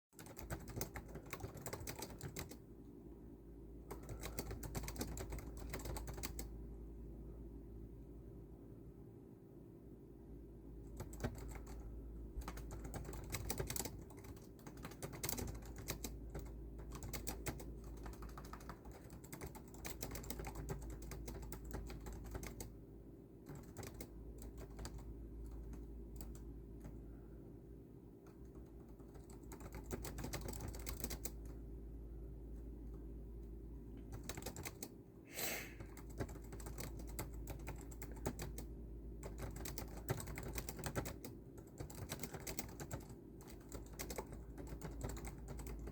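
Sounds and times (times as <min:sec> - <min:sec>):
typing on a computer keyboard: 0:00.1 - 0:02.6, 0:03.8 - 0:06.5, 0:10.9 - 0:22.7, 0:23.4 - 0:27.0, 0:28.2 - 0:31.6, 0:34.0 - 0:35.0, 0:35.8 - 0:45.9
low steady hum: 0:00.1 - 0:45.9.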